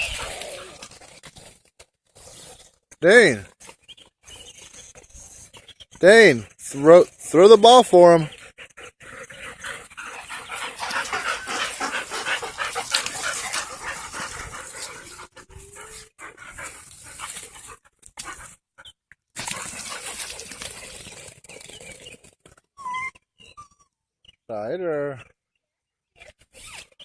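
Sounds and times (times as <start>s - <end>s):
dogs panting and whimpering: 0.0s - 1.2s, 8.2s - 21.9s
dense rustling: 10.1s - 15.4s.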